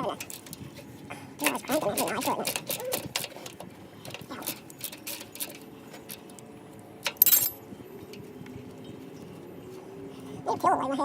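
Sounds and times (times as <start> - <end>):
hand tools clinking on metal: 0.0 - 0.6, 1.4 - 6.4, 7.0 - 7.6.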